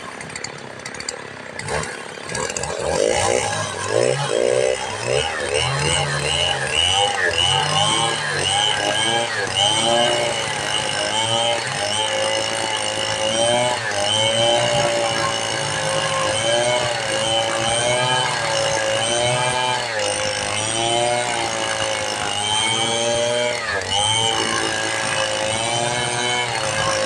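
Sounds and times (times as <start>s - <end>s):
chainsaw cutting wood: 0.0s - 27.0s.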